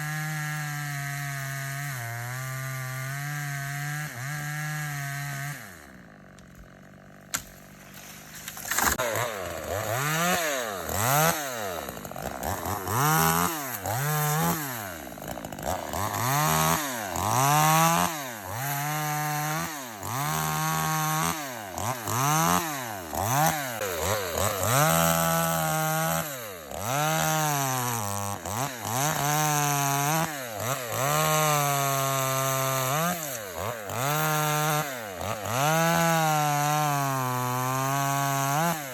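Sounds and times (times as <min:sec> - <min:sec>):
chainsaw engine revving: 0:00.0 - 0:38.9
chainsaw click: 0:06.3 - 0:11.3.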